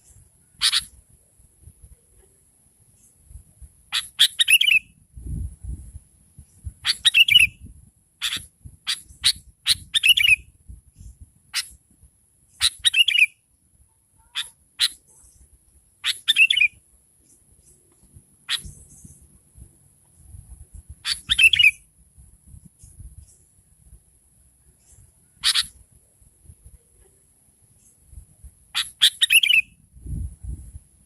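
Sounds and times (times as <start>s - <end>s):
bulbul chattering calls: 0.0s - 1.0s, 3.9s - 4.8s, 6.8s - 7.6s, 8.2s - 10.4s, 12.5s - 13.4s, 14.2s - 16.8s, 18.4s - 19.2s, 21.0s - 21.8s, 24.8s - 25.8s, 28.8s - 29.7s.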